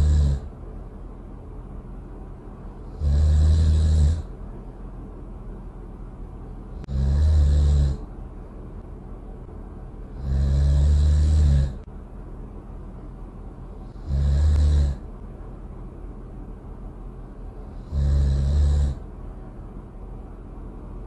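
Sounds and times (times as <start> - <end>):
loud snoring: 0.0 - 0.5, 2.8 - 4.3, 6.8 - 8.1, 10.1 - 11.9, 13.8 - 15.1, 17.7 - 19.0
steady low hum: 0.0 - 21.0.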